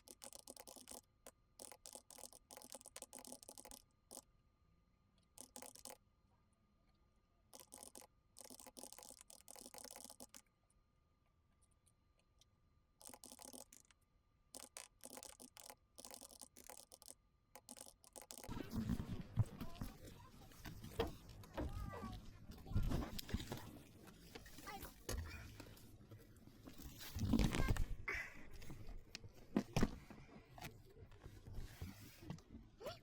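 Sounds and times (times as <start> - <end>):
typing on computer keyboard: 0.0 - 4.2, 5.4 - 6.0, 7.5 - 10.5, 13.0 - 18.5.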